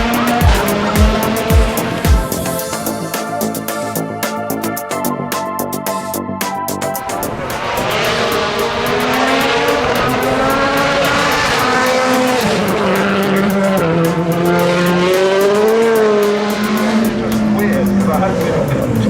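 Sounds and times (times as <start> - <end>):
rally car engine accelerating: 0.0 - 2.6, 7.1 - 19.0.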